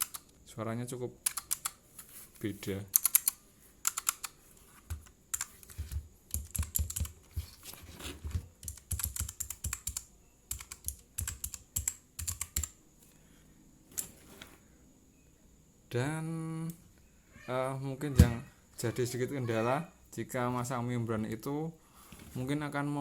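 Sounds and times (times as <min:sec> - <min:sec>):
mechanical keyboard keys clicking: 0:00.0 - 0:00.3, 0:01.3 - 0:01.8, 0:02.9 - 0:07.2, 0:08.6 - 0:12.8.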